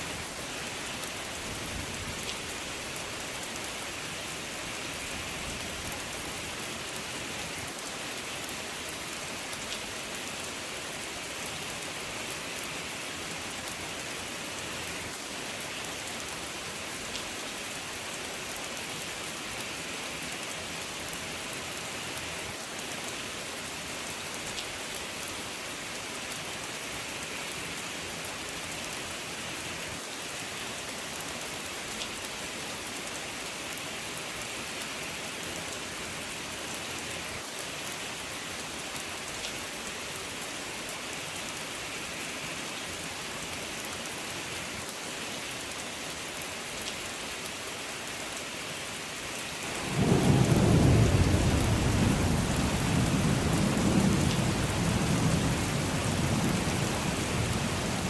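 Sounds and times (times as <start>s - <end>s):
heavy rain falling: 0.0s - 58.0s
thunder rumbling: 49.7s - 58.0s.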